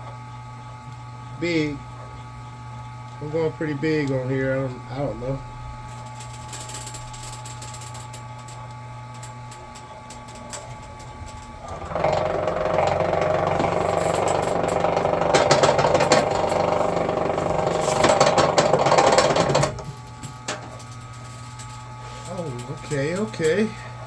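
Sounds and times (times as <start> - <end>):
wire stripping machine motor: 5.9 - 23.8
cable feeding through rollers: 9.8 - 23.7.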